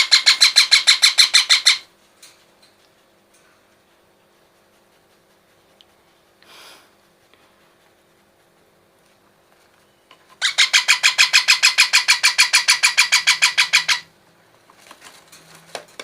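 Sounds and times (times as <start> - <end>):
parrot chick calling: 0.0 - 1.9, 10.4 - 14.1.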